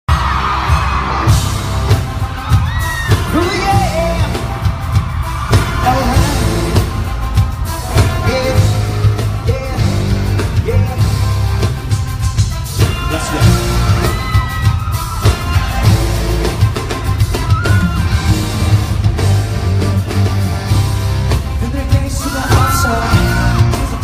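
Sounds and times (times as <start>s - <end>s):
heavy bass beat: 0.1s - 24.0s
person singing: 3.1s - 4.7s, 5.6s - 7.1s, 7.9s - 11.3s, 21.5s - 24.0s.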